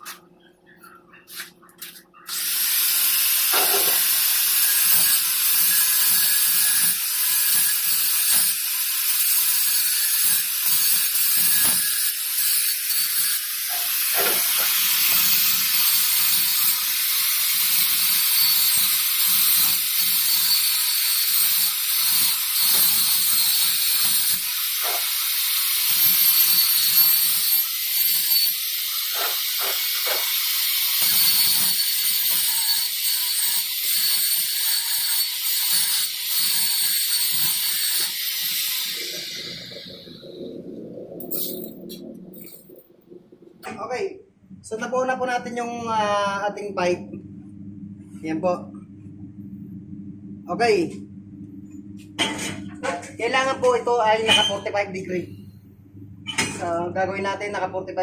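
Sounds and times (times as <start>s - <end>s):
welding arc crackling: 2.3s - 40.5s.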